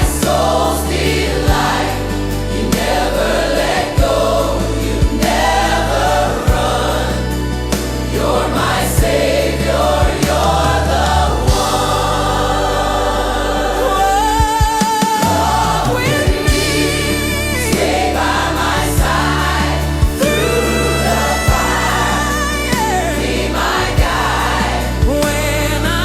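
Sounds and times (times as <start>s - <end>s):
bass and beat: 0.0s - 26.0s
gospel choir singing: 0.0s - 26.0s
held note sung with vibrato: 20.2s - 23.2s.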